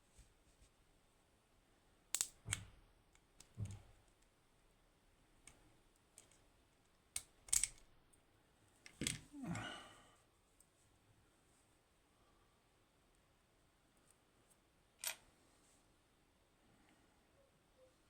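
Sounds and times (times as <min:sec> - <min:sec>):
metallic clicks and taps: 0:02.2 - 0:04.3.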